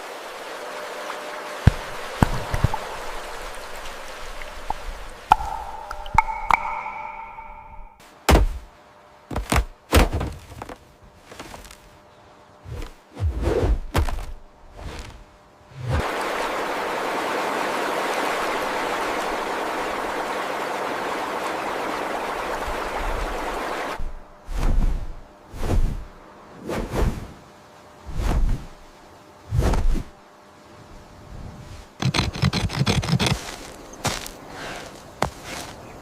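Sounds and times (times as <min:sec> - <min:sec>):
dull thuds: 0:01.7 - 0:02.8.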